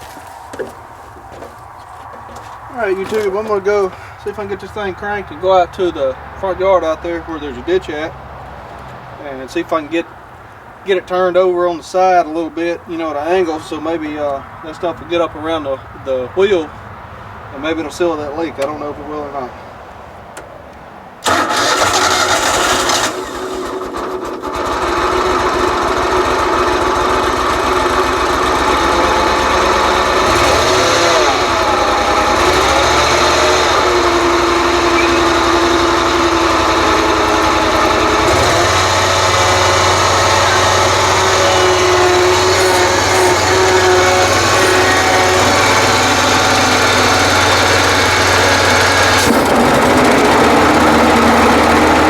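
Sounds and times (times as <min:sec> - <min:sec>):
riding lawn mower engine: 0:00.0 - 0:10.3, 0:21.2 - 0:52.0.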